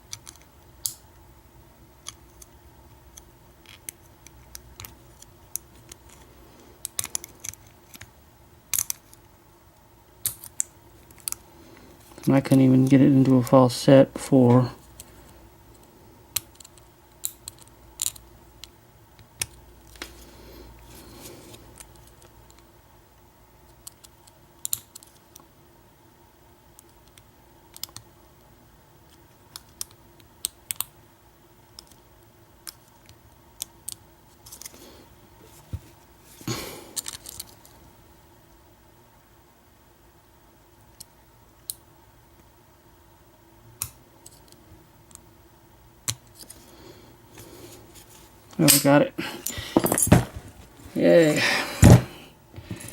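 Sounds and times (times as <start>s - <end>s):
soft handling rustles: 35.4s - 36.5s, 47.3s - 51.0s.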